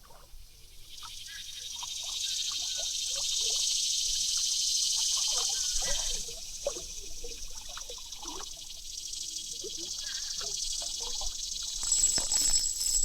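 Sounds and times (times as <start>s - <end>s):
high-pitched insect drone: 9.0s - 13.0s
water trickling over rocks: 11.7s - 13.0s.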